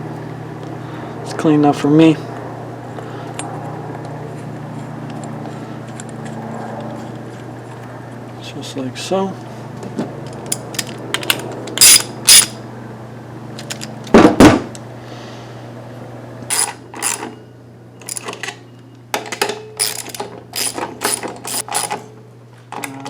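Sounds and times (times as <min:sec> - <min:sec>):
metal tools clinking: 0:10.4 - 0:12.6, 0:16.5 - 0:17.4, 0:18.0 - 0:22.1
ratchet wrench clicking: 0:10.8 - 0:12.6, 0:16.5 - 0:17.3, 0:19.8 - 0:22.1.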